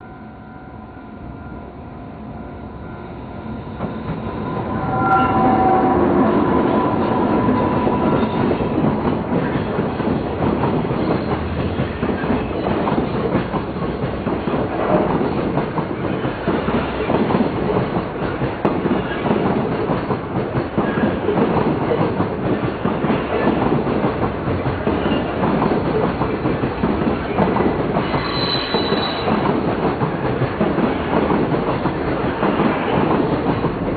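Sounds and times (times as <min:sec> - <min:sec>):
high squeal: 0:00.0 - 0:08.8, 0:28.0 - 0:29.4
train wheels clacking over rail joints: 0:07.4 - 0:33.9.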